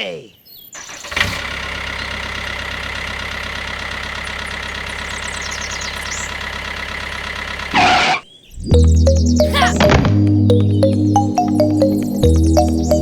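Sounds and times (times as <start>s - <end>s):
engine idling: 0.8s - 9.8s
faint bird chirps: 4.2s - 6.5s, 7.8s - 9.8s.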